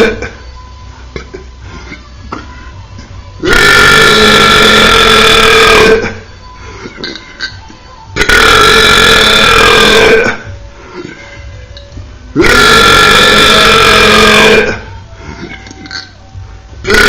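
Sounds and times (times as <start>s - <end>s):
person belching loudly: 0.0s - 0.4s, 3.4s - 6.3s, 8.2s - 10.5s, 12.4s - 14.9s.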